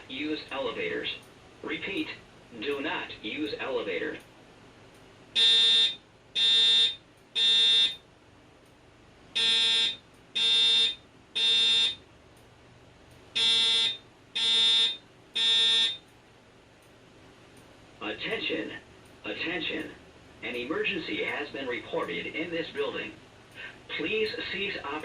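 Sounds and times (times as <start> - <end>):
spoken messages over speaker: 0.1 - 4.2, 18.0 - 23.2, 23.9 - 25.0
buzzy alarm beeps: 5.4 - 8.0, 9.4 - 12.0, 13.4 - 16.0.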